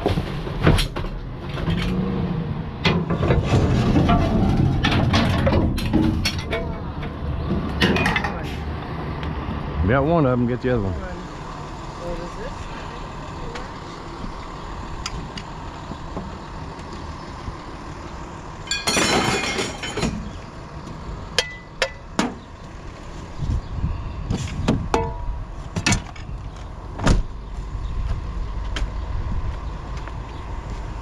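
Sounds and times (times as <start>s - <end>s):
sharp knocks and clanks: 2.8s - 8.6s, 21.4s - 22.5s, 24.3s - 26.3s
engine idling: 4.0s - 31.0s.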